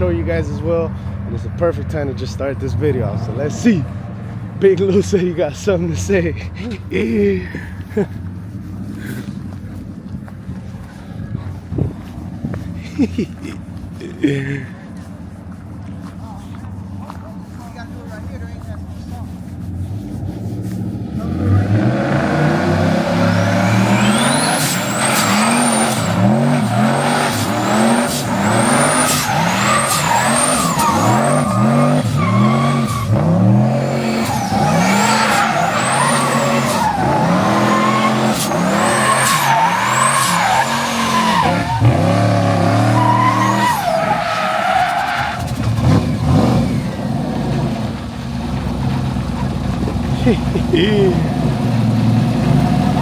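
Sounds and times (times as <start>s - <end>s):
car engine revving: 14.9s - 53.0s.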